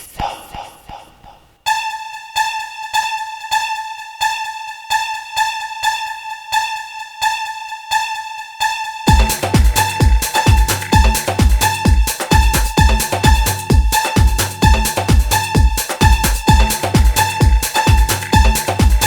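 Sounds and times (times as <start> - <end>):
pulsing synthesizer note: 1.7 - 19.0
heavy kick drum beat: 9.1 - 19.0.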